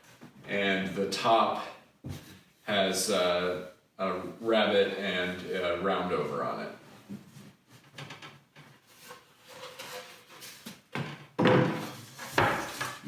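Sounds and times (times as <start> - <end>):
wood rubbing: 8.6 - 10.7, 11.5 - 13.0
loud wooden thunk: 11.0 - 13.0.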